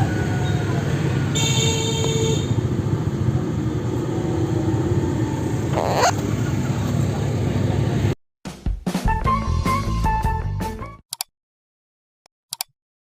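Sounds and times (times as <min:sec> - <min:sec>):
vehicle engine and traffic rumble: 0:00.0 - 0:08.2.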